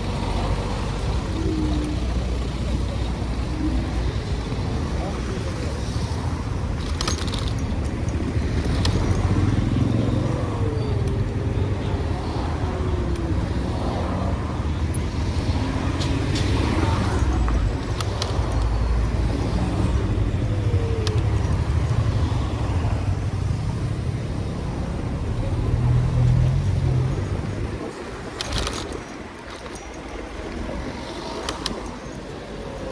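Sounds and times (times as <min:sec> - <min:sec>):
road traffic rumble: 0:00.0 - 0:32.9
clicks and knocks: 0:06.7 - 0:11.4, 0:15.7 - 0:22.0, 0:26.4 - 0:30.4, 0:31.4 - 0:32.2.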